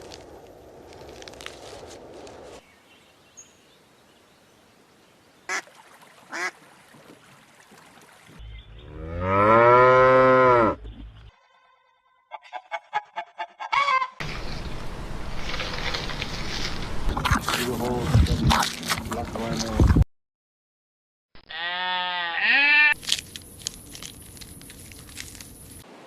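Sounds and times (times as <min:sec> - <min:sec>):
cow mooing: 0:08.9 - 0:10.8, 0:21.5 - 0:22.9.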